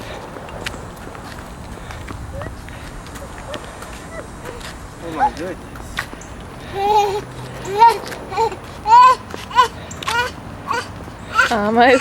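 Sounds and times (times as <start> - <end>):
toddler vocalizing: 6.6 - 12.0.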